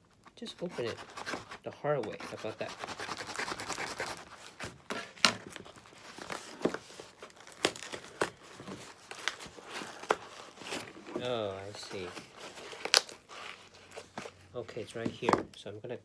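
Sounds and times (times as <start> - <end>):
package being torn open: 2.4 - 14.3.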